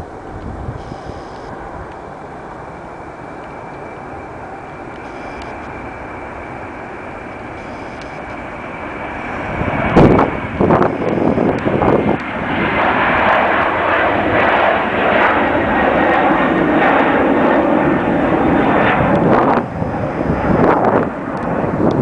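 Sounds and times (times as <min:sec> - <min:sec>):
wind buffeting microphone: 0:00.0 - 0:05.2, 0:08.3 - 0:22.0
jet engines roaring: 0:00.0 - 0:22.0.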